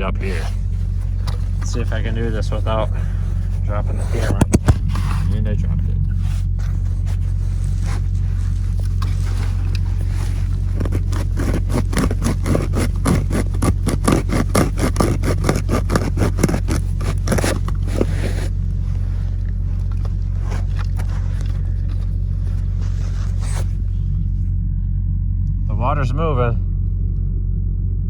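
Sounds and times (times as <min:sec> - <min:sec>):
low rumble: 0:00.0 - 0:28.0
hole saw rasping plastic: 0:00.3 - 0:05.4, 0:06.7 - 0:22.1.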